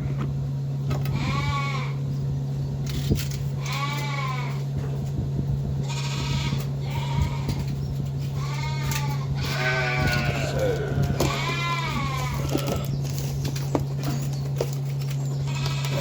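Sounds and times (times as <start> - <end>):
steady low hum: 0.0 - 16.0
farm animals bleating: 0.9 - 2.0, 3.6 - 4.7, 5.8 - 13.0, 15.4 - 16.0.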